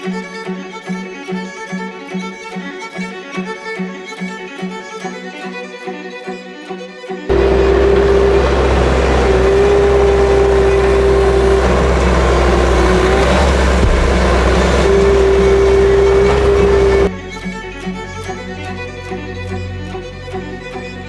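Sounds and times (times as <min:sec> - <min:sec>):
constant whine: 0:07.3 - 0:17.1
machine engine running: 0:07.3 - 0:17.1.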